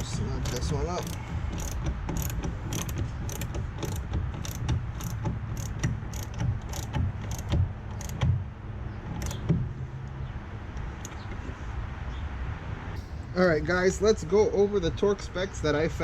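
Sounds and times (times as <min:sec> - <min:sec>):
ratchet wrench clicking: 0:00.0 - 0:08.3, 0:09.1 - 0:09.5.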